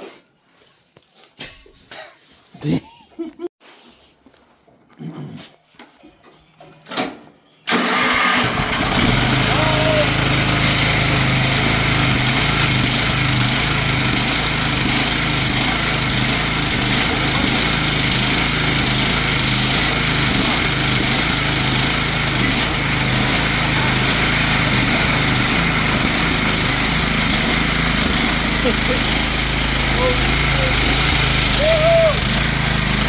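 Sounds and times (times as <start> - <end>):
lawn mower engine running: 7.7 - 33.0.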